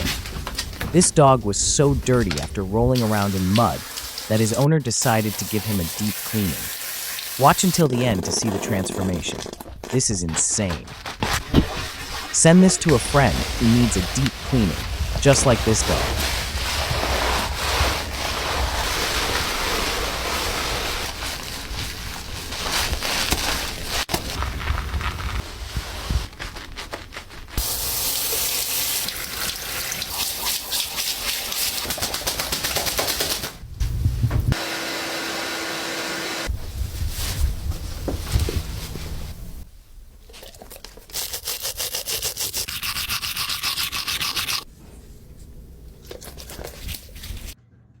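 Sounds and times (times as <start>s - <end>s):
spraying water rushing: 1.0s - 7.9s, 11.8s - 21.1s
uneven rubbing: 9.9s - 27.6s
rapid rubbing strokes: 10.4s - 21.5s.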